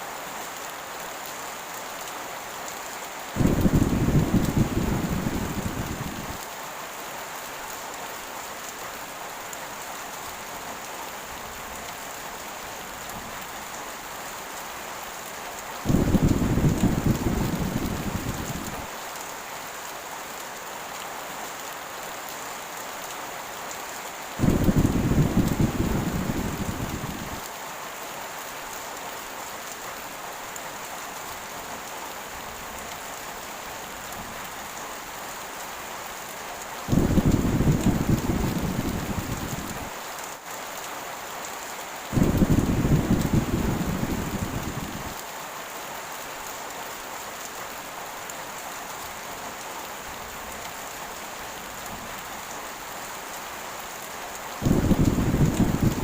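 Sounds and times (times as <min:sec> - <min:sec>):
heavy rain: 0:00.0 - 0:56.0
thunder rolling: 0:03.4 - 0:06.4, 0:15.9 - 0:18.9, 0:24.4 - 0:27.4, 0:36.9 - 0:39.9, 0:42.2 - 0:45.2, 0:54.6 - 0:56.0.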